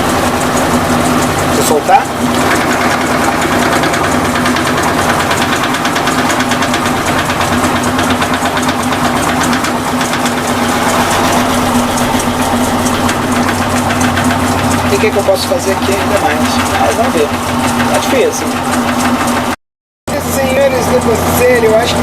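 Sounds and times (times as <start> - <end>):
washing machine hum: 0.0 - 22.0
fast rattling knock: 2.1 - 19.6.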